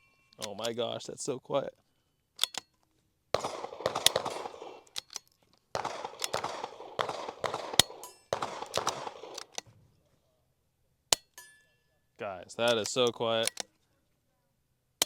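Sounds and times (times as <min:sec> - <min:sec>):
rapid gunfire: 0:03.4 - 0:04.9, 0:05.8 - 0:09.6.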